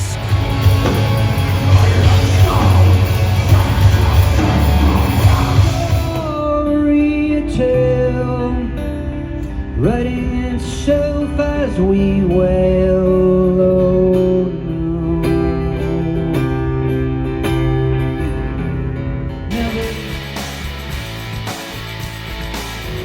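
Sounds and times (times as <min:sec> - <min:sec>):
person singing: 0:00.0 - 0:08.8, 0:19.5 - 0:20.4
band music with guitar: 0:00.0 - 0:23.0.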